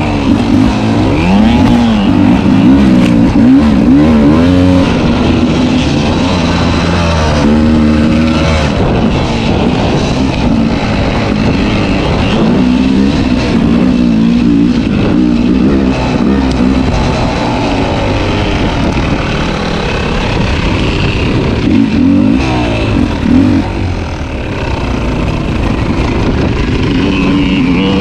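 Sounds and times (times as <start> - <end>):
dirt bike engine revving: 0.0 - 28.0.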